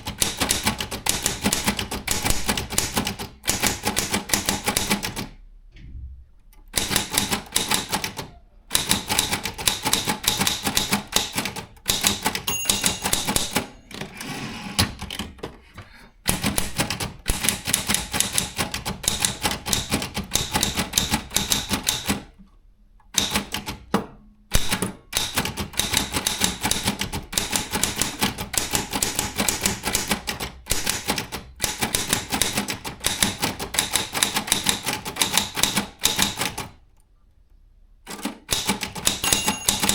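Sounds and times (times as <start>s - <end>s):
typewriter keys clacking: 6.8s - 15.5s, 16.3s - 22.2s, 38.1s - 39.9s.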